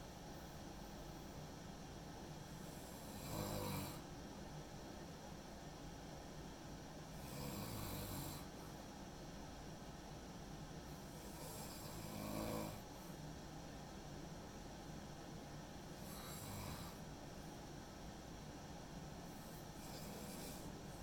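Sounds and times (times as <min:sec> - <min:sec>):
person snoring: 0:02.6 - 0:04.0, 0:11.2 - 0:12.8, 0:16.0 - 0:17.0, 0:19.8 - 0:20.7.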